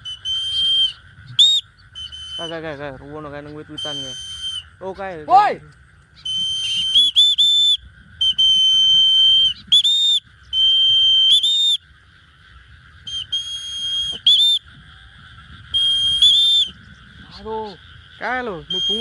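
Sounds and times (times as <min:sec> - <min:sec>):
person whistling calls: 0:00.0 - 0:02.6, 0:03.7 - 0:04.8, 0:06.2 - 0:11.8, 0:13.1 - 0:14.7, 0:15.7 - 0:17.4, 0:18.6 - 0:19.0.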